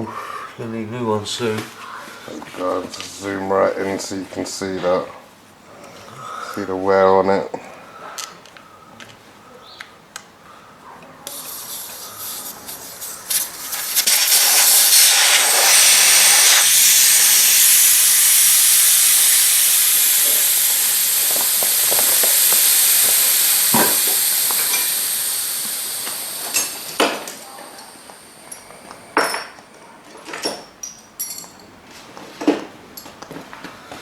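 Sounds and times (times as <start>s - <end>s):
air hissing out of tyre: 11.3s - 29.3s.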